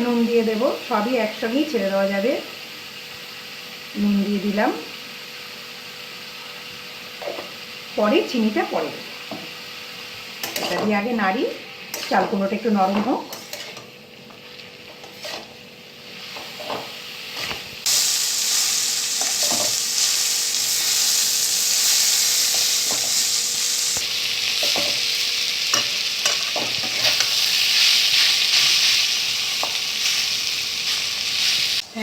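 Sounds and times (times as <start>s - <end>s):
food sizzling in oil: 0.0s - 32.0s
spatula scraping pan: 13.3s - 13.9s, 15.0s - 15.6s.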